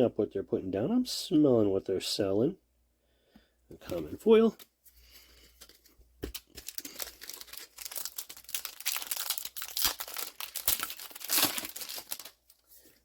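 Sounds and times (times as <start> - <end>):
foil wrapper tearing and crinkling: 6.2 - 12.6.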